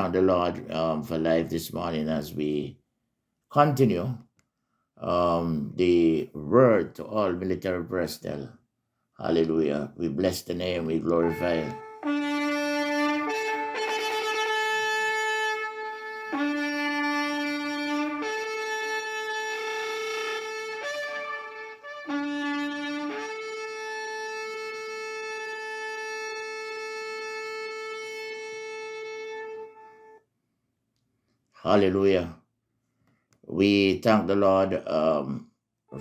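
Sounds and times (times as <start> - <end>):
bugle call: 11.1 - 30.2.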